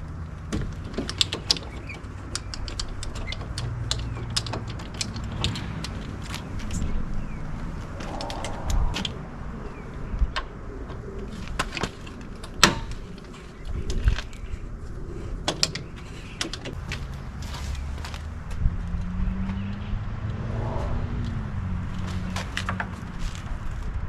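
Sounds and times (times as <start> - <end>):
hand tool clicks and knocks: 0.5 - 6.4.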